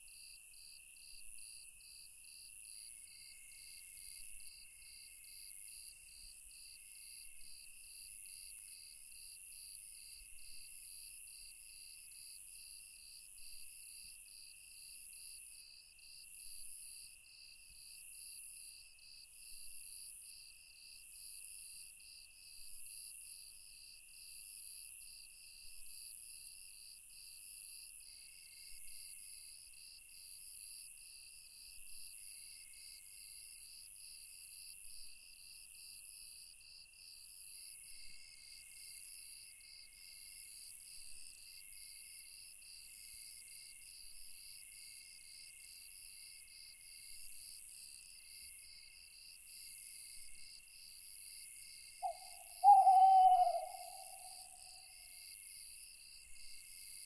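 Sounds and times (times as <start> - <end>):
night insects chirping: 50.2 - 56.8
high shrill insect layer: 52.0 - 54.7.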